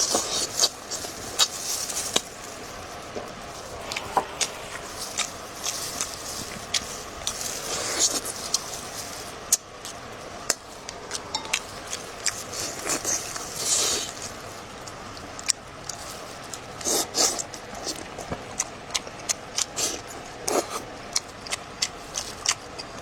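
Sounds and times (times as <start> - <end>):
chewing with wet smacks: 3.8 - 8.7, 9.5 - 23.0.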